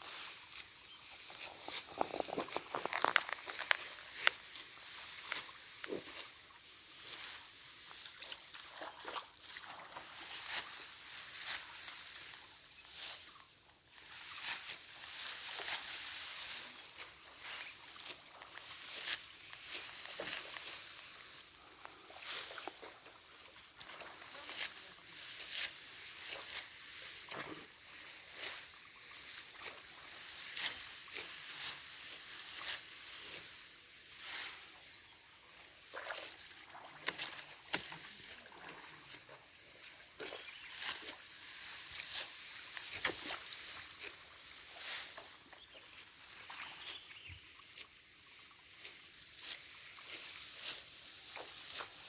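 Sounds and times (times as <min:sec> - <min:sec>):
dry stalks cut with a sickle: 0:00.0 - 0:08.4, 0:09.4 - 0:13.4, 0:14.0 - 0:21.5, 0:24.2 - 0:34.6, 0:36.9 - 0:39.4, 0:40.2 - 0:45.8, 0:48.8 - 0:52.0.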